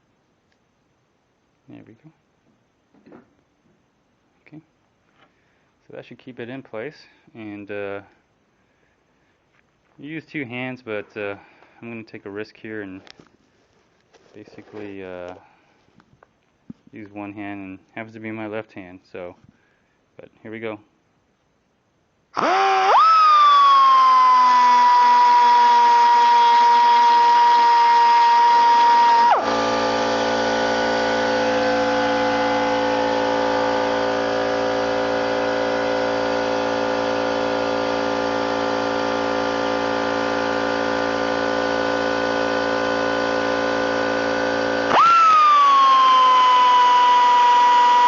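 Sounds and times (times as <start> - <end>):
die grinder whine: 22.4 - 48.0.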